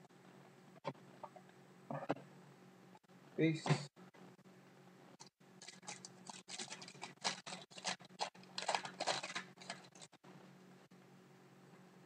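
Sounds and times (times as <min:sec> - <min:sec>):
wrappers crinkling: 0:05.6 - 0:10.2.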